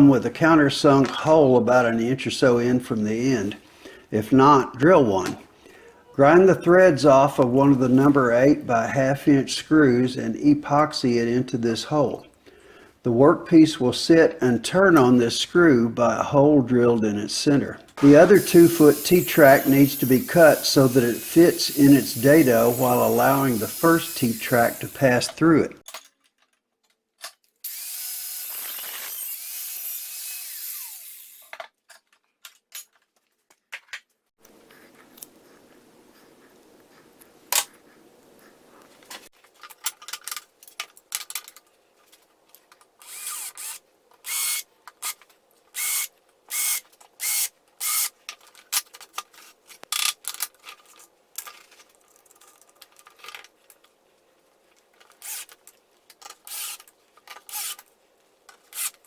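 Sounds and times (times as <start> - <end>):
power tool cutting: 18.0 - 25.3, 27.6 - 31.5, 43.0 - 44.6, 45.8 - 48.1, 57.5 - 57.8.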